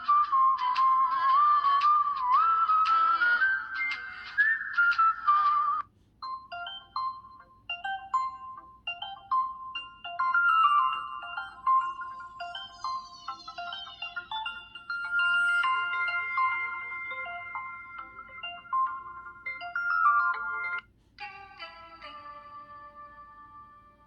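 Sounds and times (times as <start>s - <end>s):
phone ringtone melody: 0.0s - 24.0s
electronic ringtone notes: 6.2s - 24.0s.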